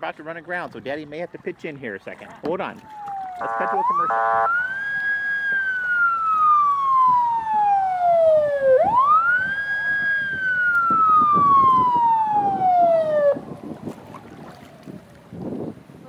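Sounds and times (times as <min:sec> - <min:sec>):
siren wailing: 0:02.9 - 0:15.0.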